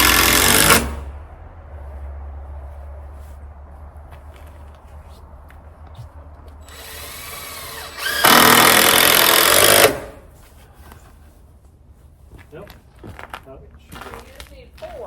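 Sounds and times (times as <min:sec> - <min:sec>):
power tool running: 0:00.0 - 0:01.1, 0:06.6 - 0:10.2.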